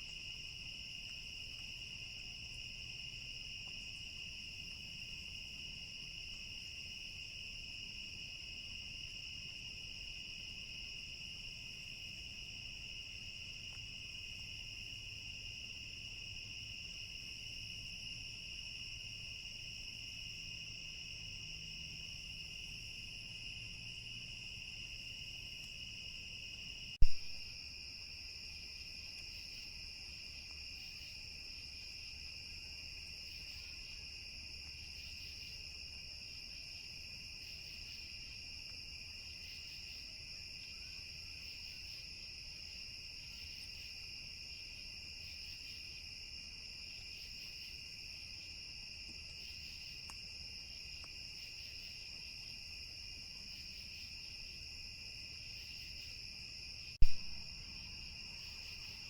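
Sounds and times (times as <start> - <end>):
crickets trilling: 0.0 - 59.0
sharp click: 27.0 - 27.2, 57.0 - 57.2.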